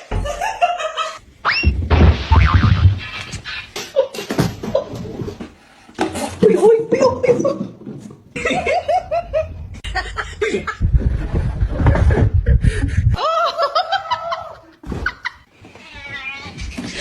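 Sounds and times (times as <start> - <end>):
person laughing: 8.4 - 10.9
heavy low rumble: 9.1 - 13.2.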